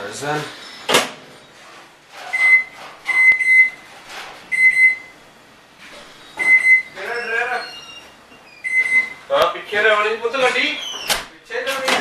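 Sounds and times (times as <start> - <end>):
microwave keypad beeping: 2.3 - 3.9, 4.5 - 5.2, 6.4 - 7.1, 8.6 - 9.2.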